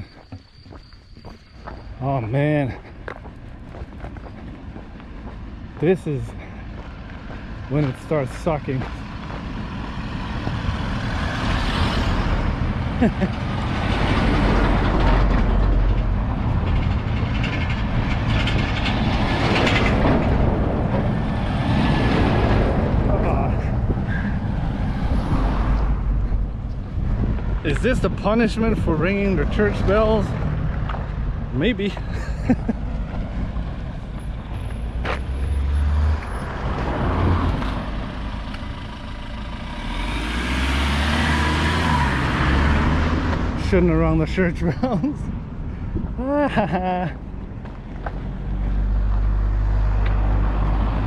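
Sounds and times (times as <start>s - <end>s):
road traffic rumble: 0.0s - 51.0s
heavy vehicle passing: 4.3s - 44.6s.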